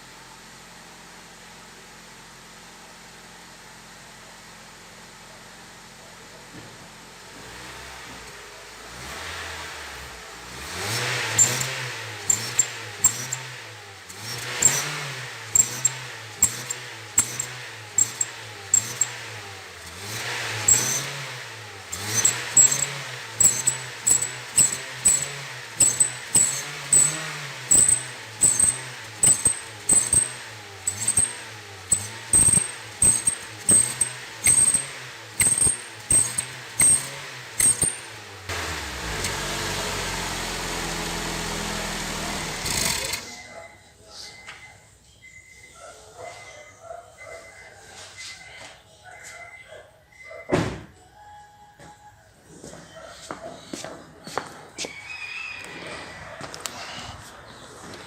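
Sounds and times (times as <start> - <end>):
car engine revving: 7.3 - 43.3
high-pitched chirps on revs: 10.5 - 44.1.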